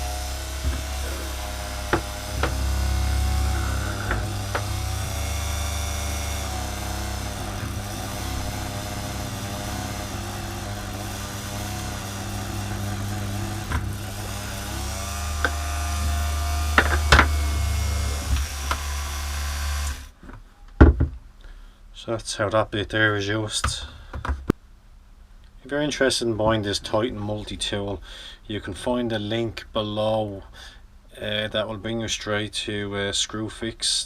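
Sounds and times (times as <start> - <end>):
rotary tool motor whine: 0.0 - 20.2.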